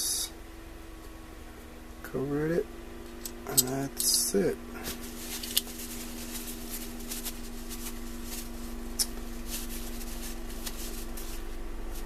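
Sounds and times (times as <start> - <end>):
steady low hum: 0.0 - 12.0
metal parts clicking and rustling: 3.1 - 8.4.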